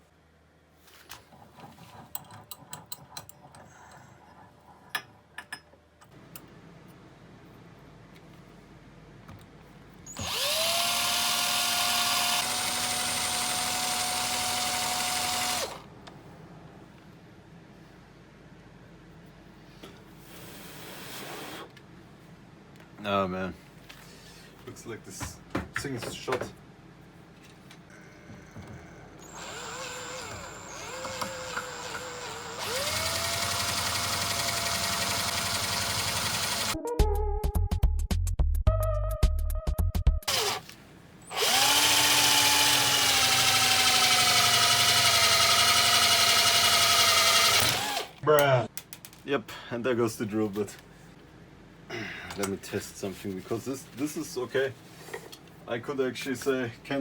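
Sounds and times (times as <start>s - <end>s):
electric drill motor spinning: 10.1s - 15.9s, 29.2s - 36.8s, 40.3s - 40.7s, 41.3s - 48.2s.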